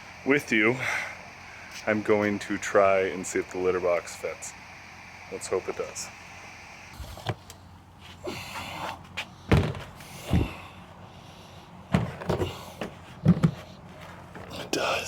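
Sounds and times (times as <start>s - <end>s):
box knocking against wooden frame: 9.5s - 9.9s, 11.9s - 12.5s.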